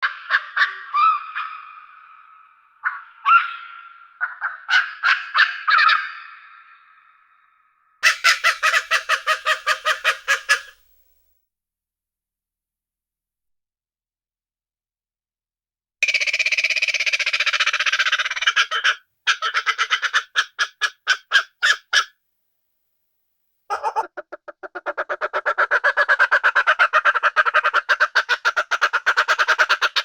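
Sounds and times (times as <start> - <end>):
bird screeching: 8.0 - 10.8
fast chattering bird calls: 8.0 - 10.8, 16.0 - 22.1, 23.7 - 30.0.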